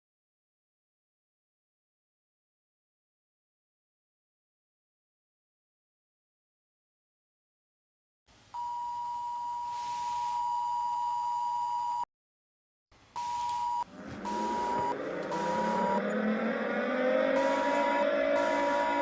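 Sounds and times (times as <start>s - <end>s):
electronic beeps: 13.2s - 19.0s
low rising tone: 13.8s - 19.0s.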